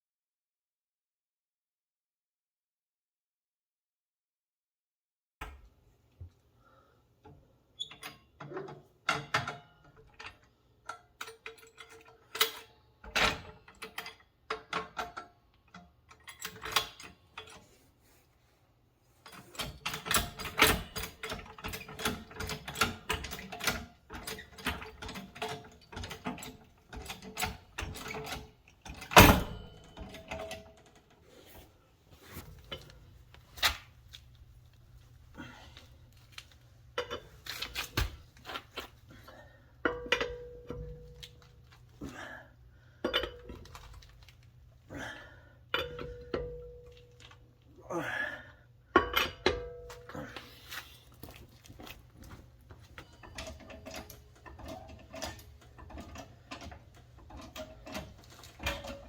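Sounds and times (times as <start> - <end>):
hand tools clicking and knocking: 19.2 - 31.2, 50.8 - 59.0.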